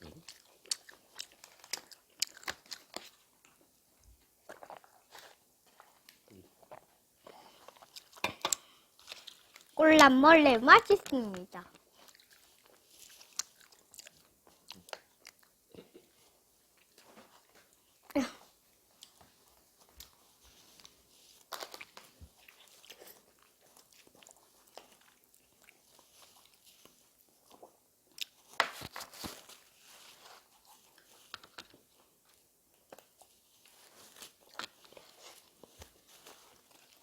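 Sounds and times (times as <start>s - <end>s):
person chewing crunchy food: 0.0s - 9.8s, 10.8s - 18.1s, 18.7s - 37.0s.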